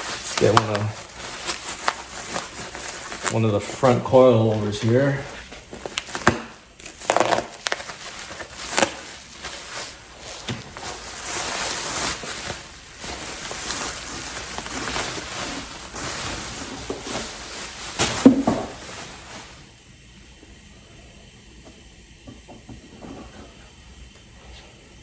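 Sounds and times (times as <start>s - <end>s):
packaging rustling and crinkling: 0.0s - 19.7s.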